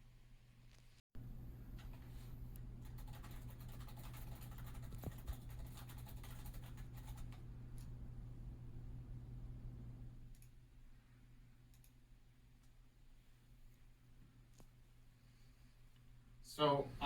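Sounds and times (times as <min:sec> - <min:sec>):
low electrical hum: 0:00.0 - 0:17.0
light clicks and scratching: 0:02.9 - 0:07.9.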